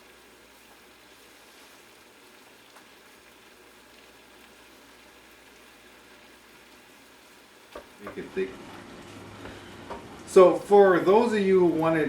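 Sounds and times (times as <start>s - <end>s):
sauce bubbling in a pan: 0.0s - 12.0s.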